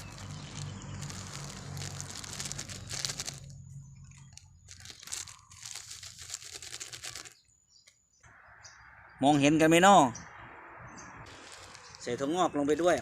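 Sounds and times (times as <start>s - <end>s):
plastic bag crinkling and tearing: 0.0s - 7.4s, 11.3s - 12.0s.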